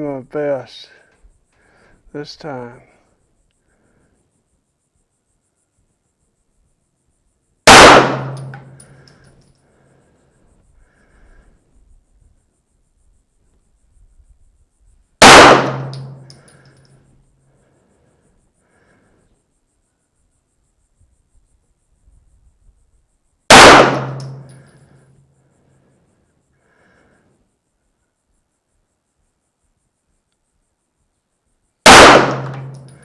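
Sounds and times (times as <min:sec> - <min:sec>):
pistol shots: 0:07.7 - 0:08.8, 0:15.2 - 0:16.2, 0:23.5 - 0:24.5, 0:31.8 - 0:33.0.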